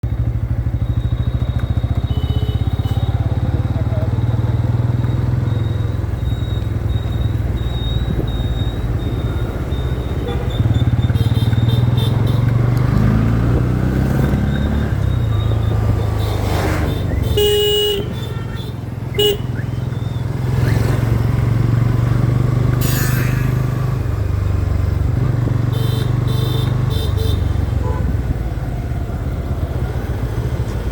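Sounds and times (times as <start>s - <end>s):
motorcycle engine running: 0.0s - 30.9s
road and wind noise: 0.0s - 30.9s
vehicle horn honking: 1.4s - 3.4s, 10.2s - 12.6s, 16.0s - 19.8s, 22.8s - 23.5s, 25.7s - 28.2s.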